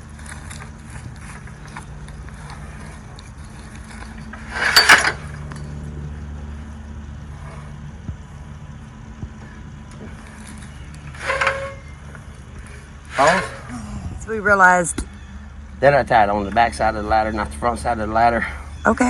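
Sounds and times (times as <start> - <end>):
metallic clattering and rattling: 0.0 - 6.0, 10.1 - 13.8
low hum: 0.0 - 19.0.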